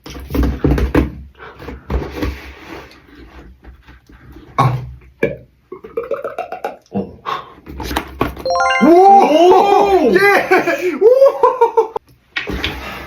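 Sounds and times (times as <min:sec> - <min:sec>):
beatboxing mouth thumps: 0:04.6 - 0:06.9.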